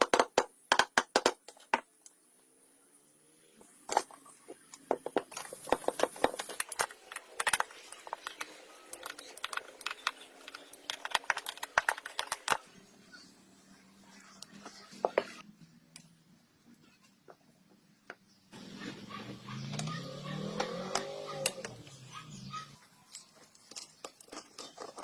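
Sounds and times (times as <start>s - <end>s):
hand tools clicking and tapping: 4.5s - 12.7s.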